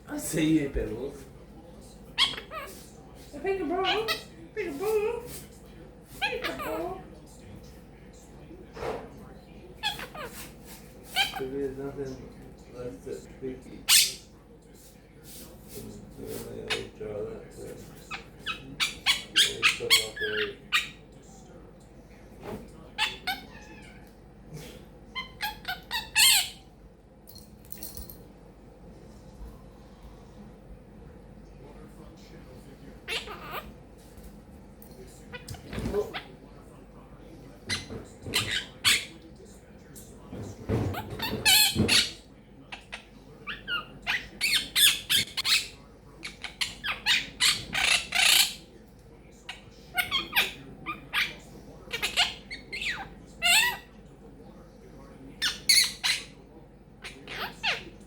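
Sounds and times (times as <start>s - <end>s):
faint raspy bird chatter: 2.0s - 7.0s, 9.7s - 12.2s, 13.7s - 15.4s, 16.3s - 22.0s, 22.9s - 26.8s, 33.0s - 33.8s, 37.6s - 40.2s, 40.9s - 54.1s, 54.8s - 58.0s
parrot chirping and squawking: 2.1s - 2.9s, 3.6s - 5.2s, 6.2s - 7.0s, 9.8s - 11.6s, 13.8s - 14.3s, 16.7s - 17.0s, 18.0s - 21.0s, 23.0s - 24.0s, 25.1s - 26.7s, 33.0s - 33.8s, 35.3s - 36.3s, 37.7s - 39.2s, 40.9s - 48.7s, 49.5s - 54.0s, 55.4s - 56.4s, 57.0s - 58.0s.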